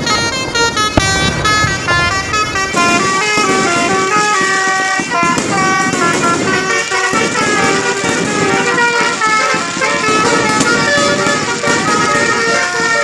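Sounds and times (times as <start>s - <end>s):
low rumble: 0.0s - 4.6s
musical air horn melody: 0.0s - 13.0s.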